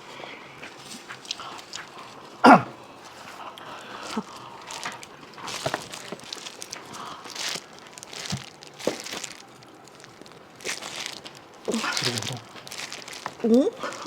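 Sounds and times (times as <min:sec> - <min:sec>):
plastic packaging crinkling: 0:03.8 - 0:14.0.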